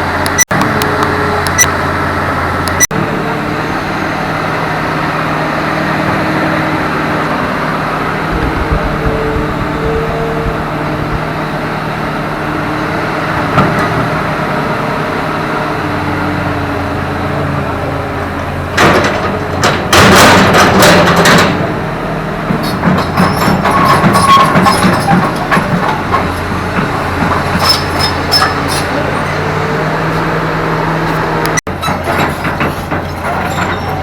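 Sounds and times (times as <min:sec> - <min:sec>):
excavator diesel engine running: 0:00.0 - 0:34.0
loud clattering and knocking: 0:08.3 - 0:11.5.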